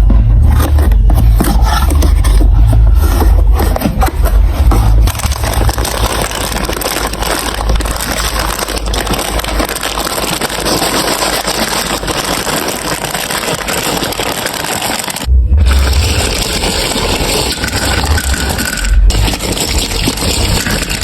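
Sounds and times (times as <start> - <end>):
marbles rattling on plastic run: 5.0 - 21.0.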